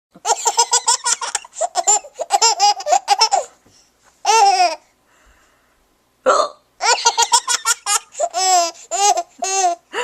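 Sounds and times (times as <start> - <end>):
baby laughing: 0.2 - 3.6, 4.2 - 4.8, 6.8 - 10.0.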